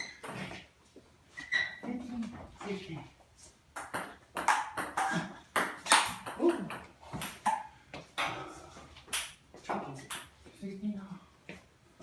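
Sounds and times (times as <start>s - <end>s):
ping pong ball taps: 3.8s - 8.3s.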